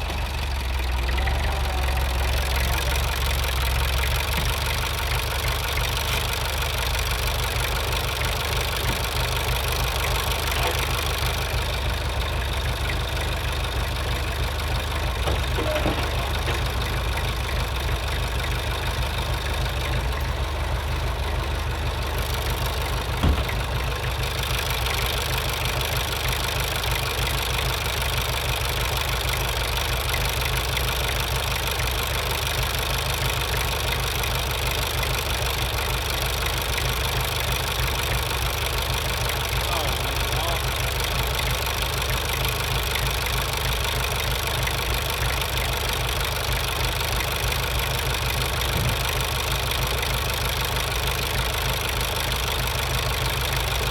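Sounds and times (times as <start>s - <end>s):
engine idling: 0.0s - 53.9s
short knock: 23.2s - 23.8s.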